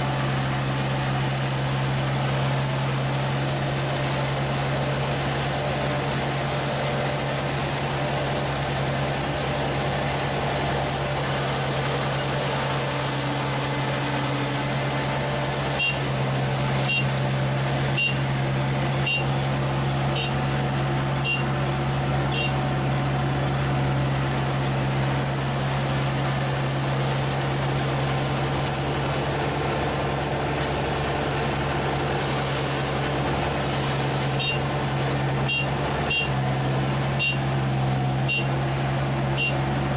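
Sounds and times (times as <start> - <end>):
harvester engine running: 0.0 - 39.9
short high beep: 15.8 - 16.1, 19.0 - 19.3, 22.3 - 22.6, 37.2 - 37.5, 38.3 - 38.5, 39.4 - 39.6.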